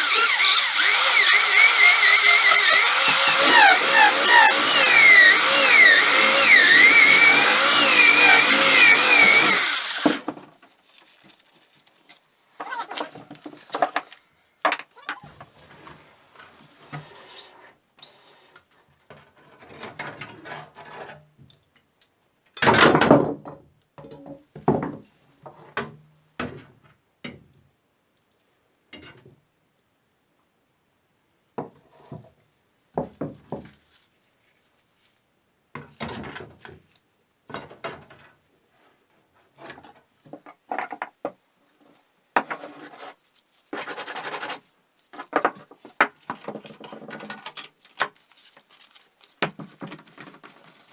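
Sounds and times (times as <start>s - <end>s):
scrapes and rubs on metal parts: 41.8s - 45.3s.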